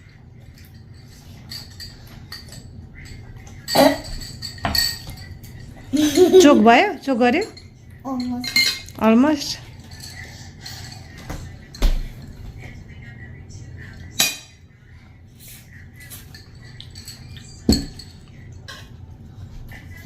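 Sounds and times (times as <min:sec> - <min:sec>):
cutlery clinking against plates: 0:00.0 - 0:06.5, 0:07.2 - 0:12.8, 0:14.0 - 0:14.6, 0:16.0 - 0:19.0
sharp cutlery clinks: 0:00.5 - 0:05.7, 0:07.4 - 0:09.0, 0:14.2 - 0:14.6.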